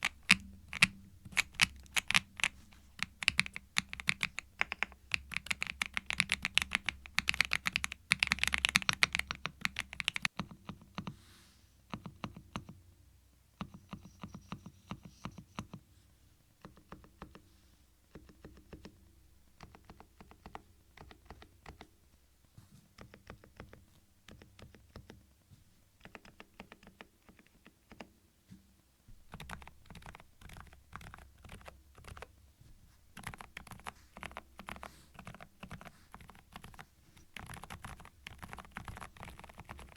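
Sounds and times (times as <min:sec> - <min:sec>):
mechanical keyboard typing: 0:00.0 - 0:11.2, 0:19.6 - 0:21.9, 0:26.0 - 0:28.1, 0:29.3 - 0:32.3, 0:33.2 - 0:39.9.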